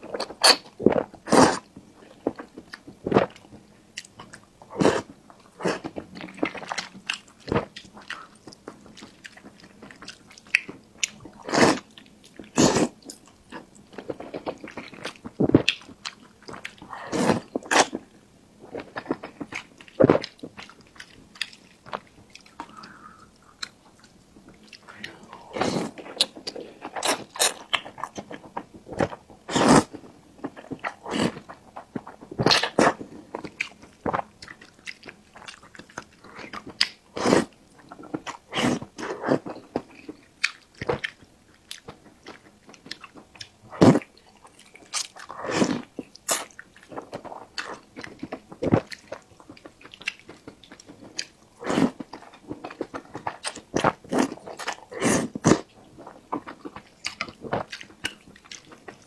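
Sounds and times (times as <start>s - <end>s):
person chewing and biting food: 18.7s - 59.0s.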